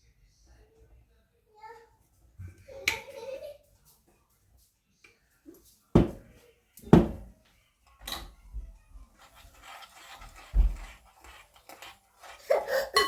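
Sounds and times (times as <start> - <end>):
dull knocks: 6.0 - 6.3, 7.0 - 7.3.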